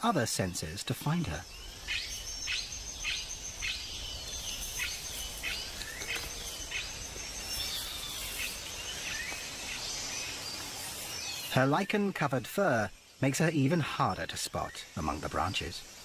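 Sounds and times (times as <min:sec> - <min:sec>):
bird chirping: 0:00.0 - 0:16.0
pulsing insect trill: 0:01.3 - 0:16.0.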